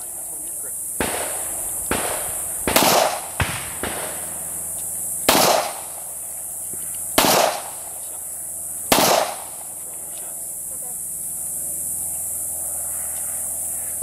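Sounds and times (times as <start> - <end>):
loud pistol shots with echo: 1.0 - 4.5, 5.2 - 6.2, 7.2 - 8.0, 8.9 - 9.7
fainter pistol shots: 1.0 - 4.6, 5.2 - 6.2, 7.2 - 8.0, 8.8 - 9.7.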